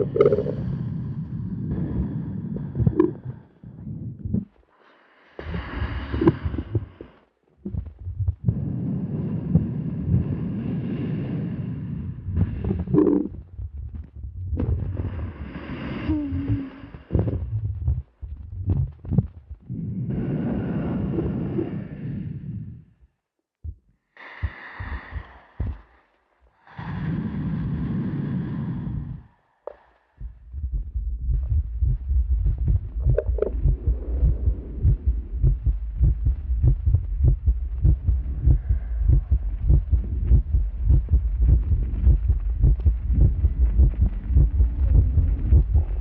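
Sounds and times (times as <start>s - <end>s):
low rumbling body sounds: 0.0s - 4.7s, 5.4s - 23.0s, 23.6s - 29.3s, 30.0s - 46.0s
person breathing close up: 0.0s - 13.5s, 14.7s - 23.1s, 24.0s - 46.0s
soft low thumps: 1.7s - 4.6s, 5.4s - 8.8s, 12.2s - 20.0s, 23.6s - 26.0s, 30.2s - 46.0s.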